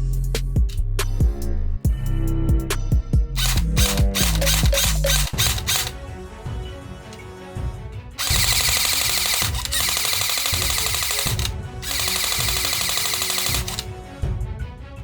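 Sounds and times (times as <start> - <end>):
background music: 0.0 - 15.0
toy gun rapid-fire bursts: 3.4 - 6.0, 8.2 - 13.9.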